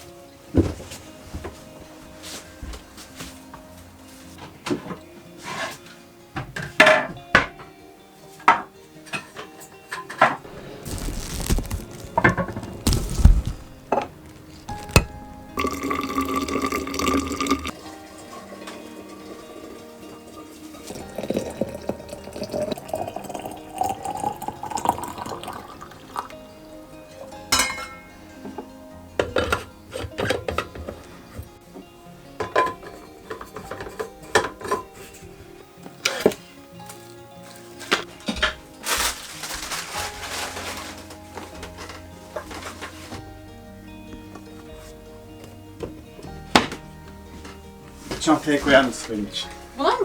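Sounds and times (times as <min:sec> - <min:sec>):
rustling rush of noise: 0:10.5 - 0:15.4
liquid pouring into a container: 0:14.6 - 0:19.8, 0:20.8 - 0:26.3
dishes and utensils clinking: 0:27.5 - 0:31.4, 0:32.4 - 0:43.2.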